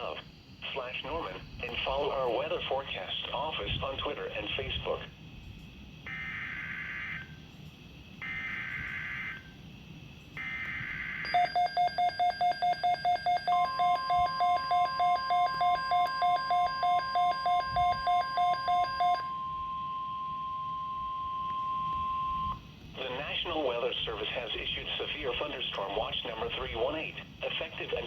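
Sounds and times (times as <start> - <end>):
steady alarm tone: 6.0 - 9.7, 10.4 - 25.4
loud pulsing beep: 11.2 - 23.2.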